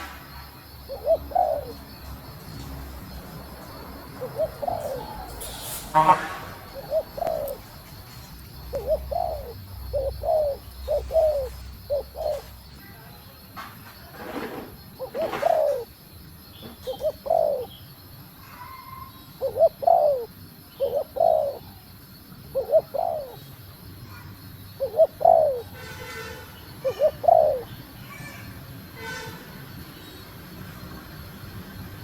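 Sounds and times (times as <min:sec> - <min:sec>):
dove cooing: 0:00.7 - 0:12.6, 0:15.0 - 0:15.9, 0:16.8 - 0:17.8, 0:18.4 - 0:21.8, 0:22.4 - 0:25.8, 0:26.8 - 0:28.2.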